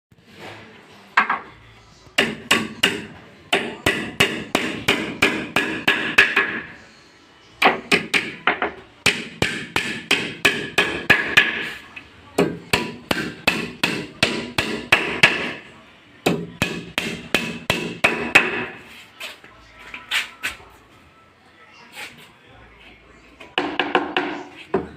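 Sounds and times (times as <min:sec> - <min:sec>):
hammer striking wood: 0:02.2 - 0:06.6, 0:07.6 - 0:11.7, 0:12.4 - 0:15.6, 0:16.2 - 0:18.8, 0:23.6 - 0:24.9.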